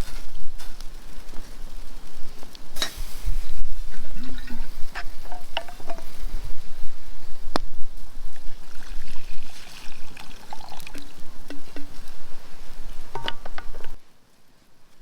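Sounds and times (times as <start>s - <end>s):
containers clinking: 3.9s - 6.3s, 8.4s - 12.1s, 13.1s - 14.0s
water pouring into a pot: 8.3s - 11.9s.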